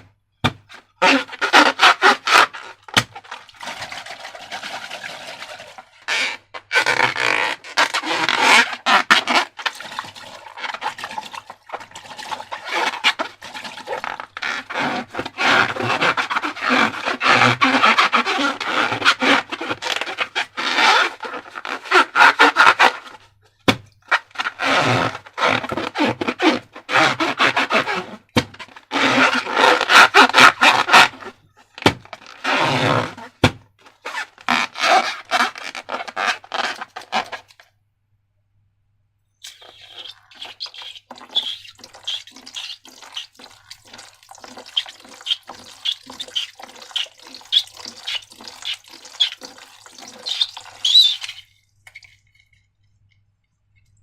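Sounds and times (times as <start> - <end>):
slime squelching by hand: 39.4 - 52.2.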